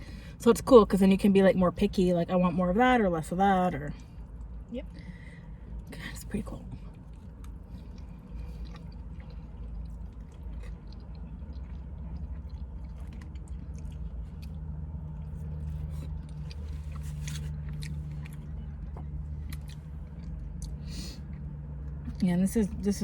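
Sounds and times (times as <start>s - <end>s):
steady low hum: 0.0s - 23.0s
wet chewing sounds: 6.6s - 22.2s.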